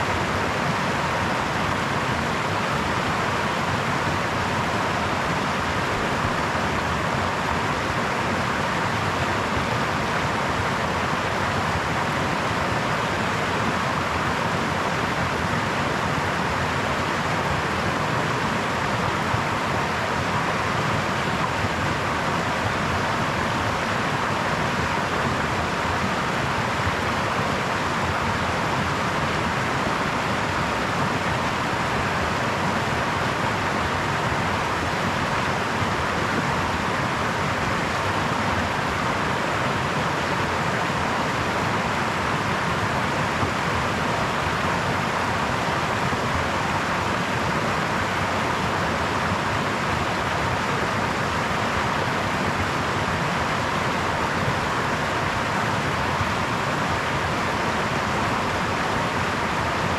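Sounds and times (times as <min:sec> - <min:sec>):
brook babbling over stones: 0:00.0 - 0:59.9.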